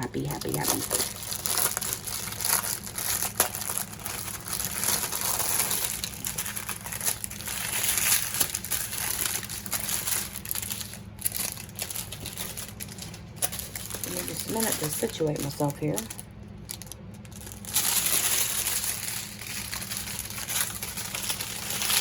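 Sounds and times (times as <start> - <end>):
plastic packets crinkling: 0.0 - 22.0.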